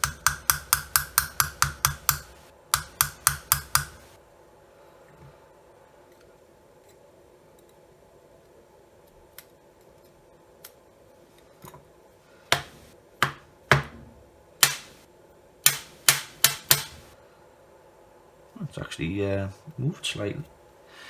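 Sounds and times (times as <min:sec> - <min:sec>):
sharp taps and clicks: 0:00.0 - 0:04.2.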